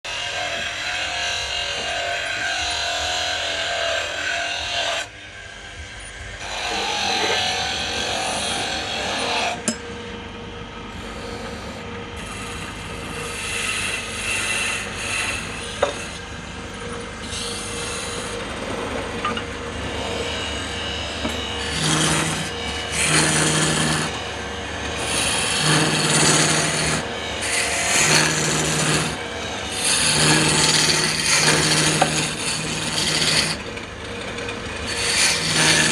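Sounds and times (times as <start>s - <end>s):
tool rasping wood: 6.4s - 9.8s, 10.9s - 16.3s, 17.1s - 18.5s, 19.8s - 33.7s, 34.8s - 35.9s.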